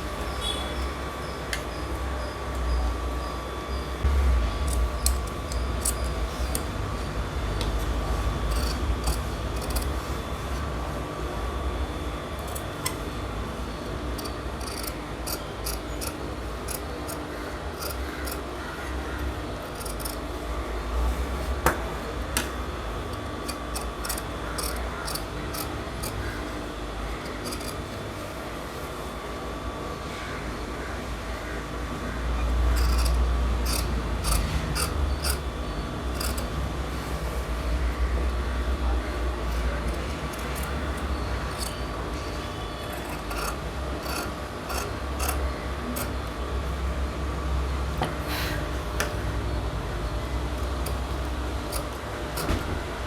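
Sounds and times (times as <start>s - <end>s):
scissors snipping cloth: 43.0s - 45.4s.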